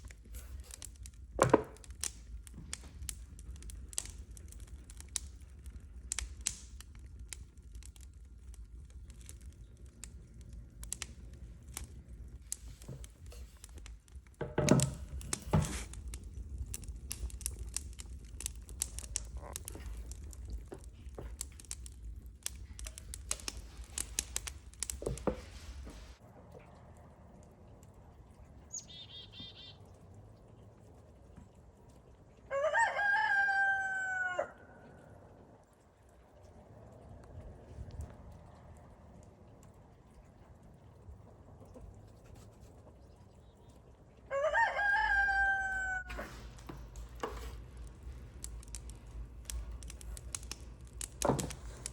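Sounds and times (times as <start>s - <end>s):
clicks and knocks: 14.3s - 16.0s
rooster crowing: 32.5s - 34.9s, 44.3s - 46.2s.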